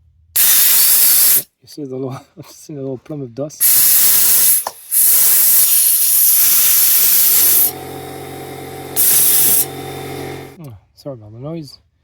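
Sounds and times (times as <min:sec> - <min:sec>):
compressed air blasting: 0:00.4 - 0:01.5, 0:03.6 - 0:10.6
low motor hum: 0:07.0 - 0:10.6.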